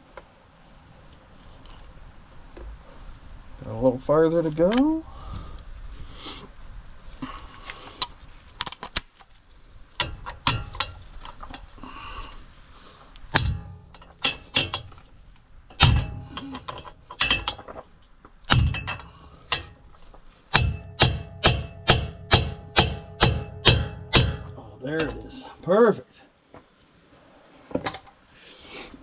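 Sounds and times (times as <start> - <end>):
hammer striking metal: 13.4 - 15.0, 15.7 - 17.6, 18.5 - 19.8, 20.5 - 25.4.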